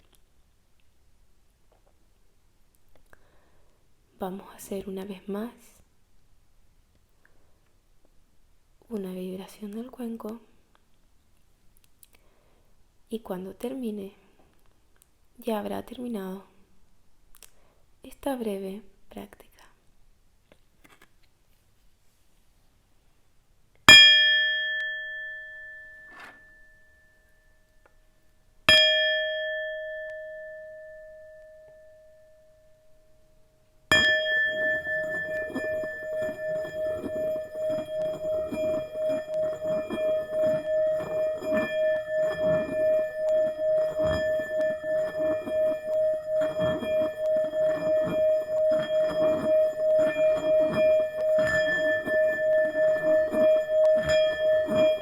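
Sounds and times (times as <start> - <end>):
singing bowl ringing: 24.0 - 27.9, 28.7 - 55.0
mallet rubbing bowl rim: 33.9 - 55.0.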